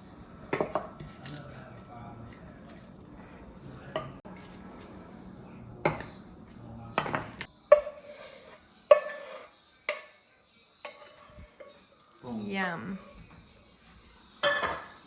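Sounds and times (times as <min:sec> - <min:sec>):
dishes and cutlery clinking: 0:00.5 - 0:02.9, 0:03.8 - 0:04.6, 0:05.8 - 0:13.6, 0:14.4 - 0:15.0.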